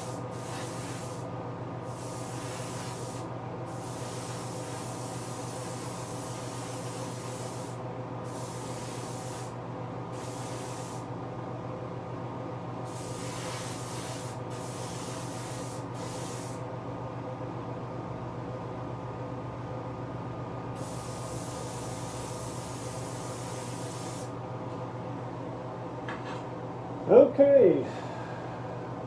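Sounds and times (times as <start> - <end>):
spray gun hissing: 0.0 - 1.3, 1.9 - 11.1, 12.9 - 16.6, 20.8 - 24.3
steady mechanical hum: 0.0 - 29.0.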